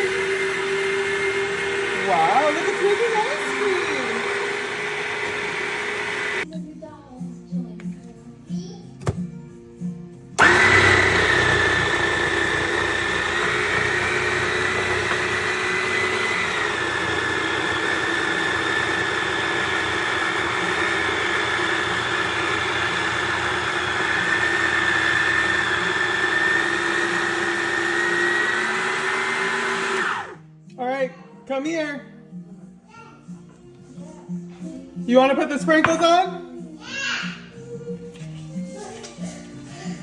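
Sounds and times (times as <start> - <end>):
dessert maker motor whining: 0.0 - 6.5, 10.4 - 30.4.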